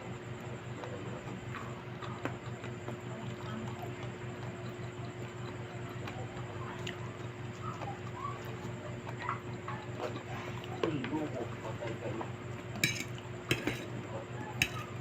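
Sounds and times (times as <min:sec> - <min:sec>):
steady low hum: 0:00.0 - 0:15.0
soft chewing: 0:00.3 - 0:15.0.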